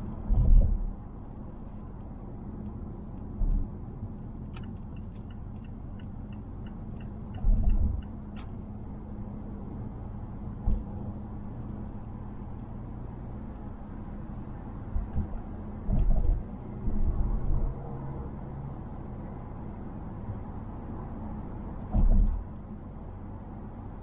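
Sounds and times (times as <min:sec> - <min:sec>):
road and engine drone in car: 0:00.0 - 0:24.0
turn signal ticking: 0:04.4 - 0:08.6.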